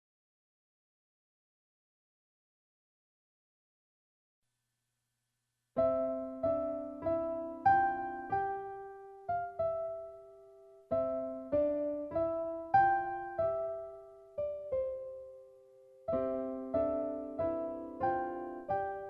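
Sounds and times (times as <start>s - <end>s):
slow piano-like keyboard melody: 5.8s - 19.0s.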